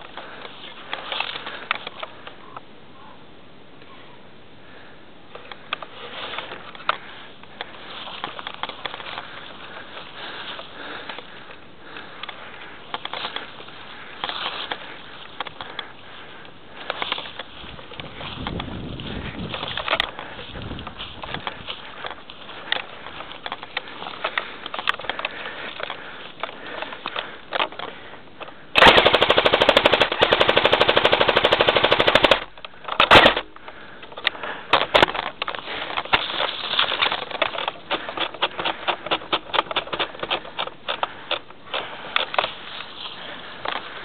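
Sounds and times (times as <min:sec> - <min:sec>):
airsoft gun full-auto bursts: 0:28.8 - 0:33.5.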